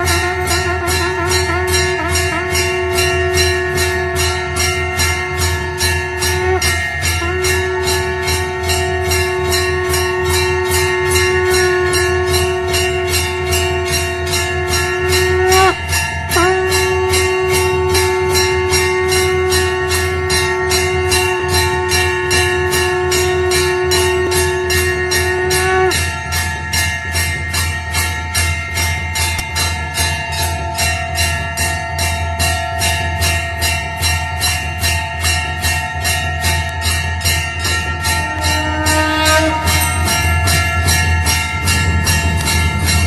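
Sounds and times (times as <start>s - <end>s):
long held tone: 0.0s - 26.5s, 36.6s - 43.0s
temple bells ringing: 0.0s - 43.0s.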